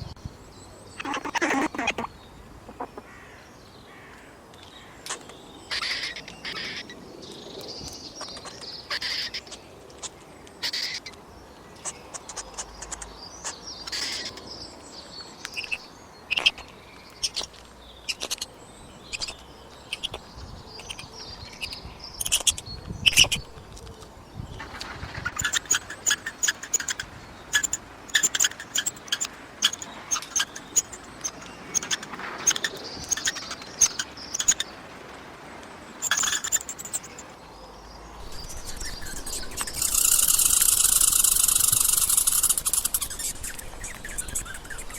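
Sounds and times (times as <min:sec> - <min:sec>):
squirrel chattering: 0:01.0 - 0:03.2, 0:05.1 - 0:06.9, 0:08.2 - 0:09.6, 0:10.6 - 0:11.1, 0:11.8 - 0:14.4, 0:15.5 - 0:17.5, 0:18.1 - 0:23.6, 0:25.2 - 0:34.6, 0:36.0 - 0:37.3, 0:38.2 - 0:44.9.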